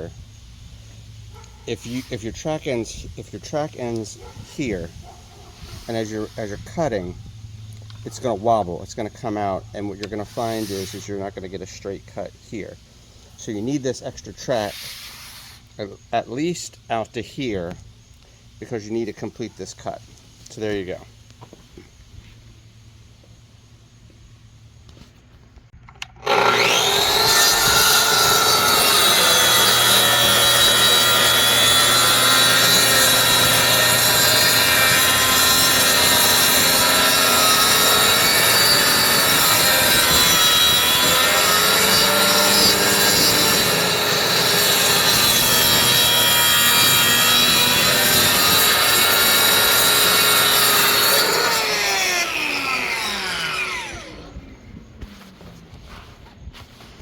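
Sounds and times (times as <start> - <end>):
circular saw cutting wood: 1.3 - 4.9, 5.6 - 7.2, 8.0 - 12.0, 26.1 - 54.4.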